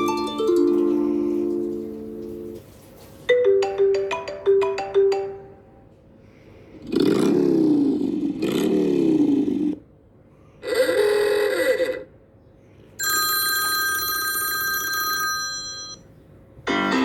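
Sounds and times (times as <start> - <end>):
held electronic chord: 16.7 - 17.0.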